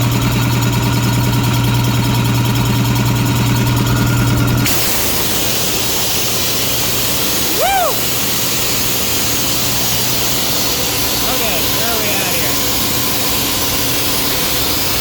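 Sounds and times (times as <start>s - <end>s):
air compressor pumping: 0.0s - 15.0s
compressed air hissing: 4.6s - 15.0s.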